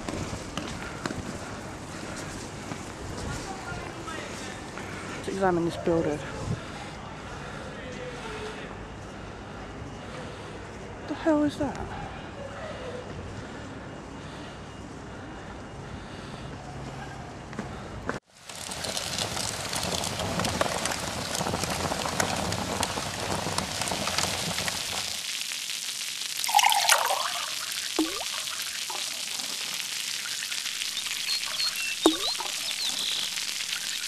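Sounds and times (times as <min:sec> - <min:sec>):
rain pattering: 0:18.3 - 0:34.0
short bird chirps: 0:30.3 - 0:34.0.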